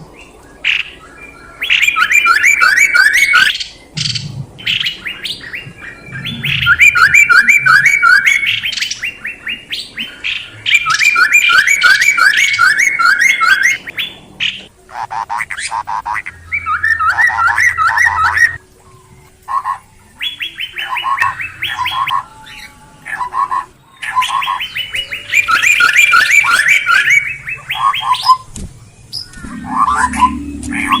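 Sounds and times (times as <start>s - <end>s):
songbird whistled calls: 0.2s - 14.6s, 15.6s - 31.0s
lower bird call series: 0.7s - 31.0s.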